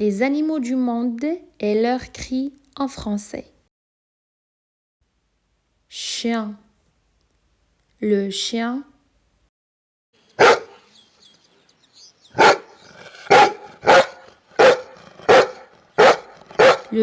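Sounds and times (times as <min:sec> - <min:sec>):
dog barking: 0:10.4 - 0:10.9, 0:12.3 - 0:17.0.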